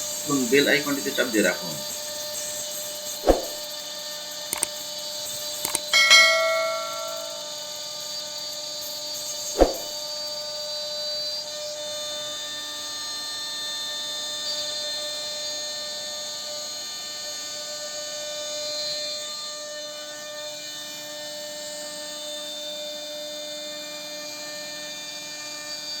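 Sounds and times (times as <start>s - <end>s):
sharp knocks: 6.0s - 7.6s.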